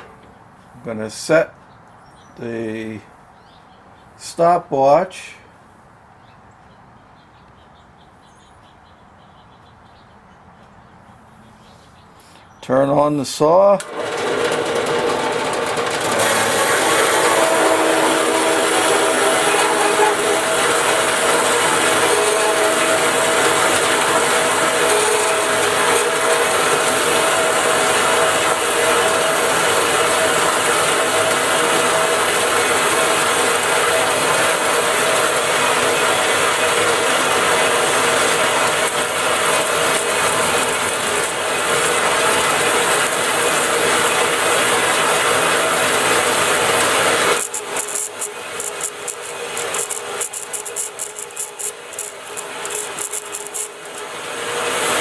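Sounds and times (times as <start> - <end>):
band saw cutting steel: 0.0 - 0.4, 13.6 - 55.0
constant hum: 0.0 - 3.1, 13.8 - 55.0.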